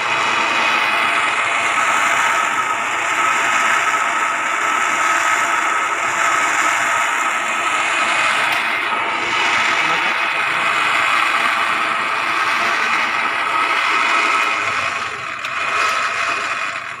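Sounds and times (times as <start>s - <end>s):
off-road vehicle engine: 0.0s - 17.0s
rattling terrain noise: 5.0s - 17.0s.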